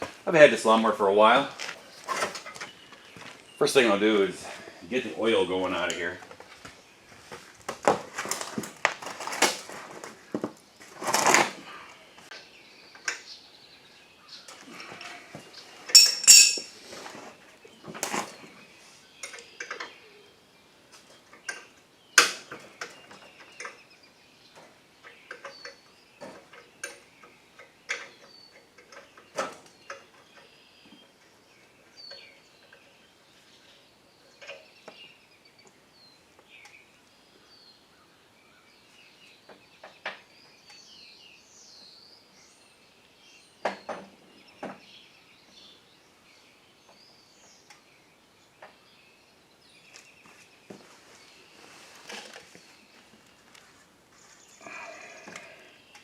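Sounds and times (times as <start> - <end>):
faint bird chirping: 11.6 - 56.0
hand tools clinking on metal: 15.9 - 16.8.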